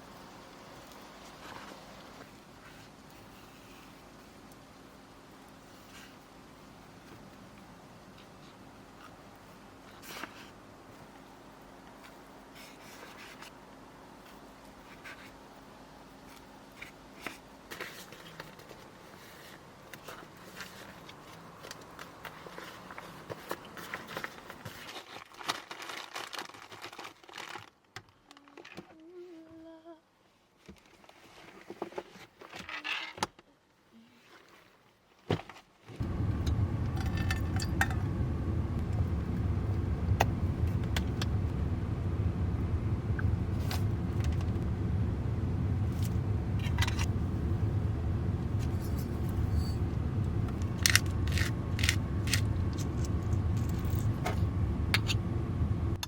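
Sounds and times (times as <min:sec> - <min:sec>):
van engine rumbling: 0:36.0 - 0:56.0.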